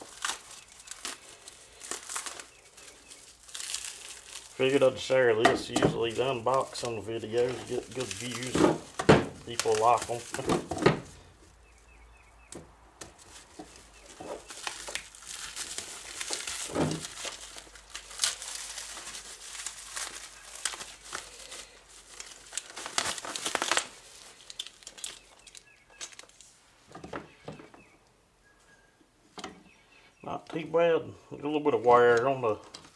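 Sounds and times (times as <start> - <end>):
plastic wrapping crinkling and tearing: 0.0 - 12.3, 13.1 - 26.6.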